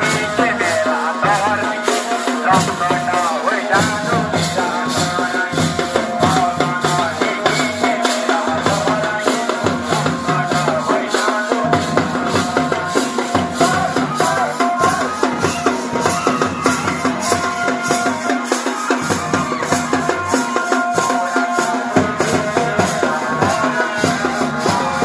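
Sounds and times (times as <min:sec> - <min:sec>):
fast drum beat: 0:00.0 - 0:25.0
held melody line: 0:00.0 - 0:25.0.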